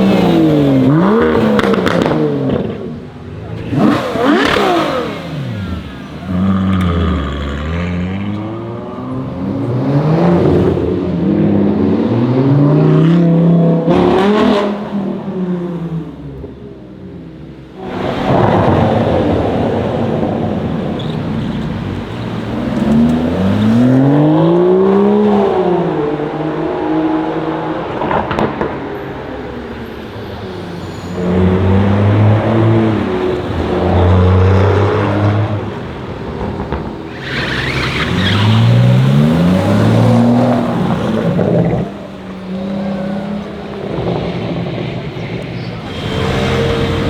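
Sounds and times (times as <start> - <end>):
car engine accelerating: 0.0 - 47.0
exhaust pop: 27.9 - 29.5, 34.9 - 47.0.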